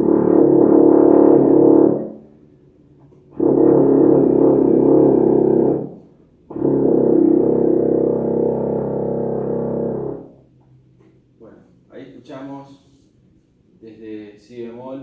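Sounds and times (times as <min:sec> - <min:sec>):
euphonium playing long notes: 0:00.0 - 0:02.2, 0:03.3 - 0:10.3.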